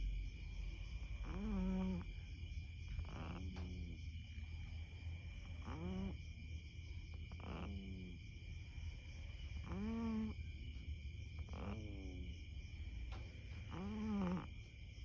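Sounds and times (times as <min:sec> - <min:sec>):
cat snoring: 0:01.0 - 0:02.3, 0:02.9 - 0:04.0, 0:04.8 - 0:06.2, 0:07.1 - 0:08.2, 0:09.2 - 0:10.4, 0:11.4 - 0:12.3, 0:13.5 - 0:14.5.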